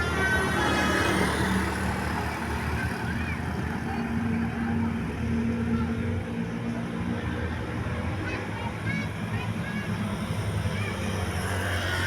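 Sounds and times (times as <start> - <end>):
bus engine: 0.0 - 12.0
road noise: 0.0 - 12.0.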